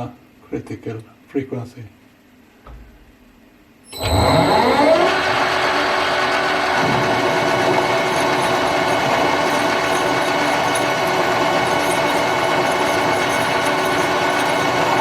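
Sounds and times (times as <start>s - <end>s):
metal lathe high-pitched whine: 3.9s - 15.0s.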